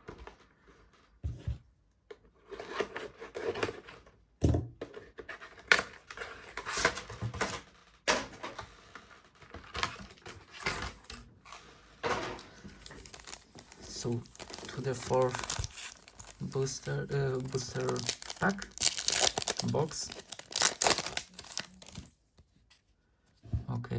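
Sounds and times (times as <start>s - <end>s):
card packaging rustling and tearing: 12.6s - 22.2s.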